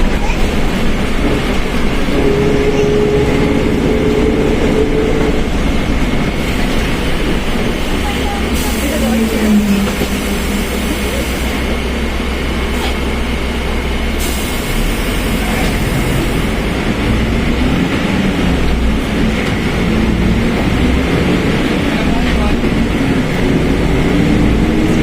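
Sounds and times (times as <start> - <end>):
diesel bus engine running: 0.0 - 25.0
differential howling: 1.8 - 11.4.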